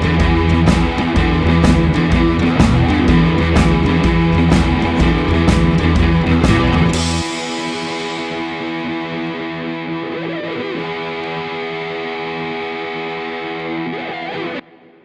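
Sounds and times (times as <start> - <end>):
distorted electric guitar chord: 0.0 - 15.0.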